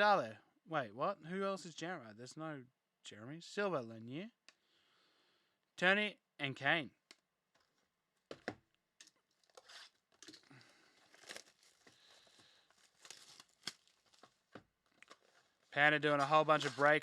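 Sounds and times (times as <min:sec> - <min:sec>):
cards rustling and clicking: 0:07.6 - 0:17.0
wrapper crinkling and tearing: 0:09.0 - 0:17.0.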